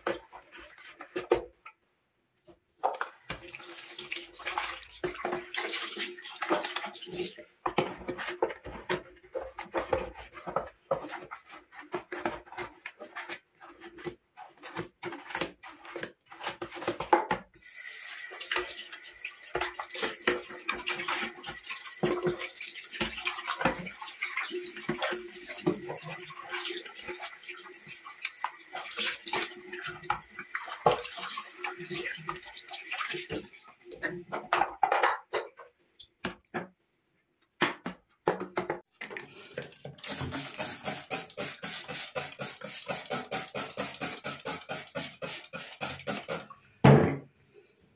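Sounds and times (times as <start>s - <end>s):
water running and splashing: 2.8s - 7.5s, 17.6s - 34.1s, 39.6s - 46.5s.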